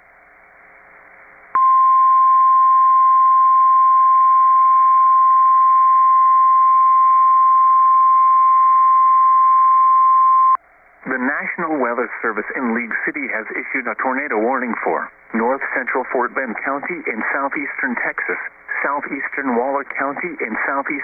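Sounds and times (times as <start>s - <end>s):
faint radio hiss: 10.8s - 21.0s.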